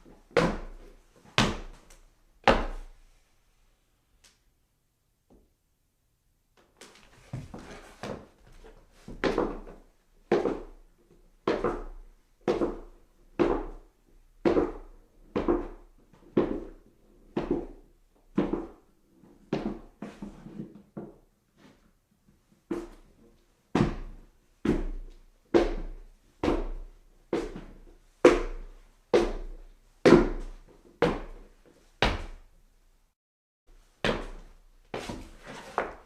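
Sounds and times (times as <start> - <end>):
footsteps on stairs: 6.9 - 10.8.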